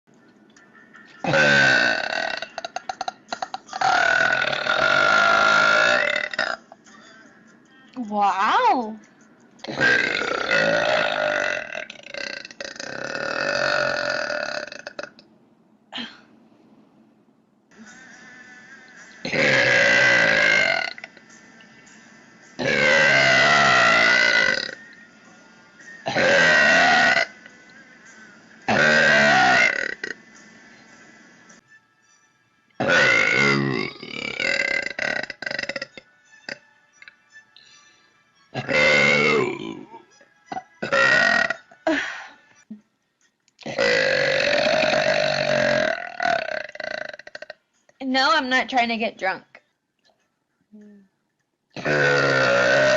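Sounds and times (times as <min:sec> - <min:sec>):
woman burping: 0:01.2 - 0:06.7, 0:09.6 - 0:15.2, 0:15.9 - 0:16.3, 0:19.2 - 0:21.1, 0:26.1 - 0:27.3, 0:28.7 - 0:30.2, 0:32.8 - 0:36.6, 0:38.6 - 0:42.2, 0:43.6 - 0:47.6, 0:51.8 - 0:52.9.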